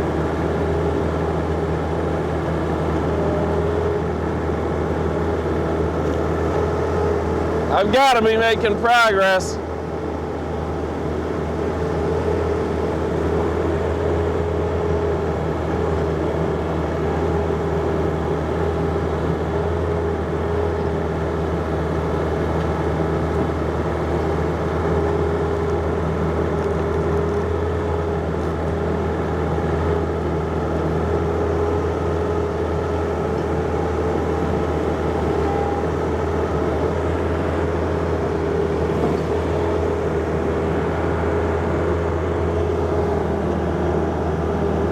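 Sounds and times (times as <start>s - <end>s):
steady whine: 0.0s - 17.6s, 28.2s - 44.9s
diesel engine running: 0.0s - 44.9s.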